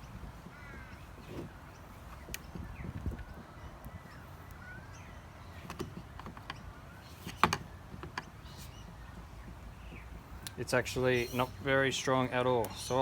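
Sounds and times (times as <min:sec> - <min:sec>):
plastic clicks and creaks: 0:05.6 - 0:06.6.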